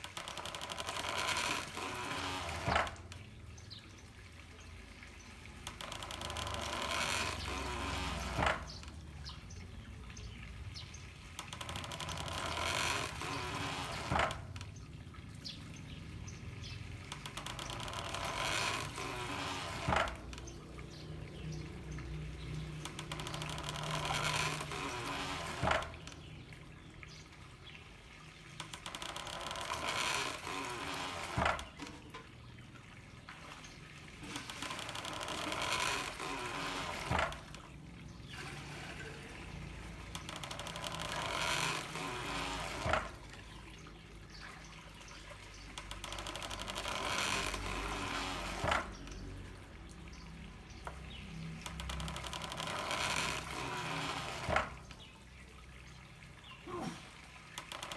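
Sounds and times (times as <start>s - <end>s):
water mill knocking: 0.0s - 57.9s
water rushing from pipes: 0.0s - 57.9s.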